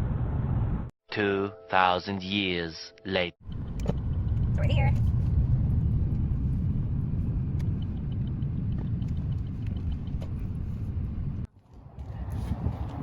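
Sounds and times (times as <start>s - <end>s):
car engine rumble: 0.0s - 0.9s, 3.4s - 13.0s
road noise: 3.4s - 13.0s.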